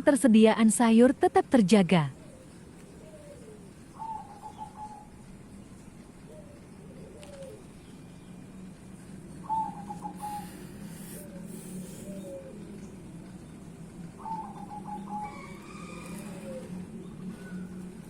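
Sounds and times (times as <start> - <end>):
dove cooing: 2.1 - 5.3, 6.2 - 7.9, 9.3 - 13.4, 14.1 - 18.0.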